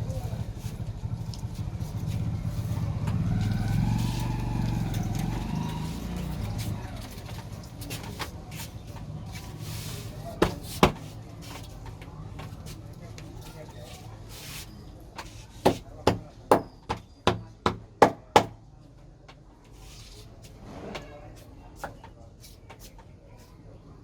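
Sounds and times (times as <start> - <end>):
motor vehicle passing: 0.0 - 7.9
low traffic rumble: 0.0 - 22.4.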